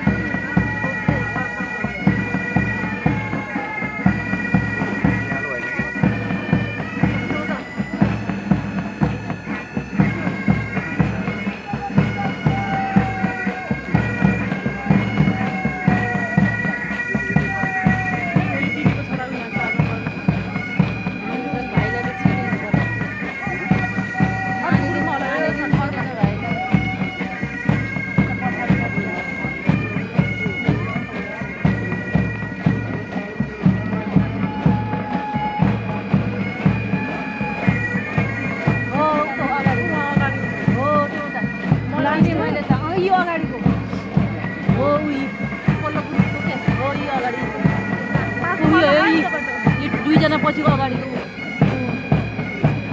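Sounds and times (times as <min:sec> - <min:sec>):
bagpipes playing a march: 0:00.0 - 0:52.9
drum beats: 0:00.0 - 0:52.9.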